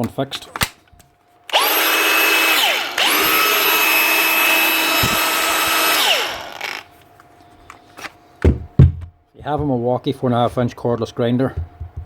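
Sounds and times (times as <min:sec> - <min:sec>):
angle grinder whining: 0:01.5 - 0:06.9.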